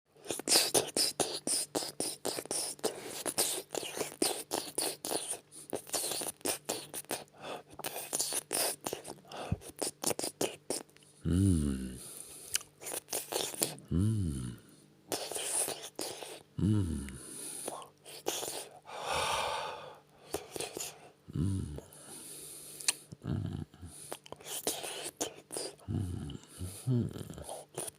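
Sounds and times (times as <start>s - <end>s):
person humming: 9.6s - 12.1s, 13.3s - 22.0s, 25.0s - 27.9s.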